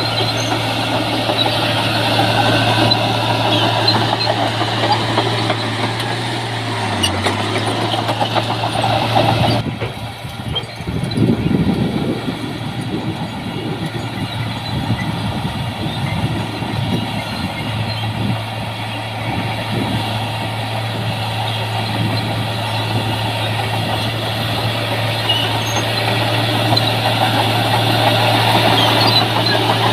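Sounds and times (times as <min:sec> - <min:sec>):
heavy diesel engine running: 0:00.0 - 0:29.9.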